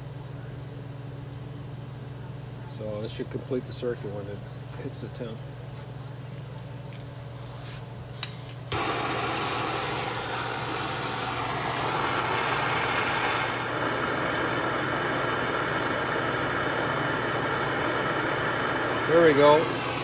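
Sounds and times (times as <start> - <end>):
electric fan motor running: 8.6 - 20.0.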